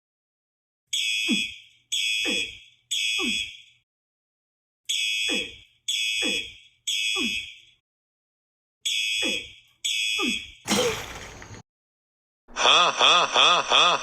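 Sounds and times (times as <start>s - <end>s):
fire alarm blasts: 0.9s - 3.8s, 4.9s - 7.8s, 8.8s - 11.6s.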